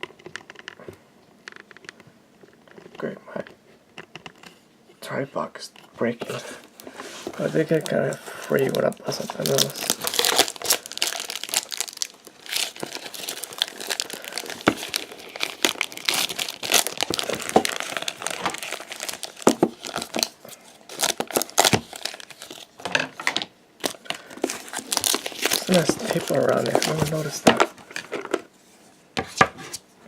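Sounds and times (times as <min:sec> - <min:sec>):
plastic wrap crinkling: 0:06.3 - 0:28.5.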